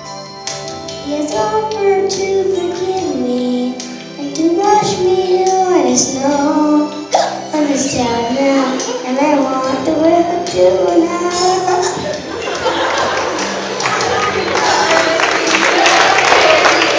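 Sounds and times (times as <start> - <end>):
musical accompaniment: 0.0 - 16.9
children singing: 4.3 - 16.9.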